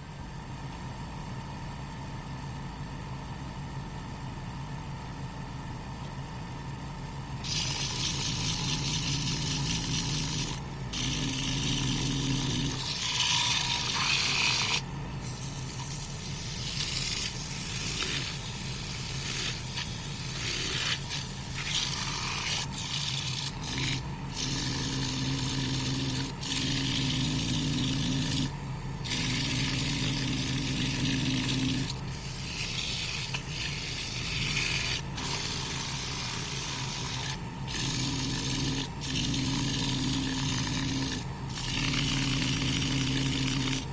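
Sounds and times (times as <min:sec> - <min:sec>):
sandpaper hissing on spinning wood: 0:07.4 - 0:43.9
wood lathe motor humming: 0:07.5 - 0:14.8, 0:16.2 - 0:43.9.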